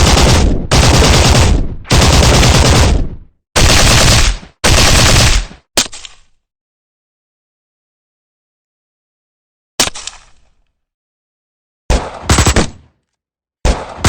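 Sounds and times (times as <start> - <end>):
automatic gunfire bursts: 0.0 - 5.6, 12.1 - 12.8.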